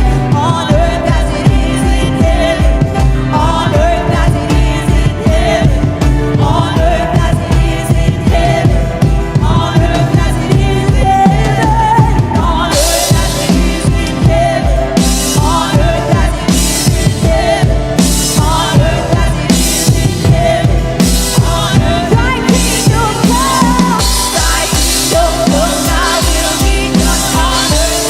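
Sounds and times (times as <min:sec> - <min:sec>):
person singing: 0:00.0 - 0:28.0
worship band music: 0:00.0 - 0:28.0.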